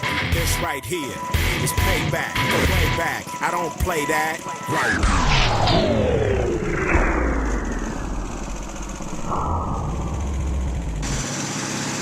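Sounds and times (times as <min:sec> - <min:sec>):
tape-stop sound effect: 0:03.9 - 0:11.3.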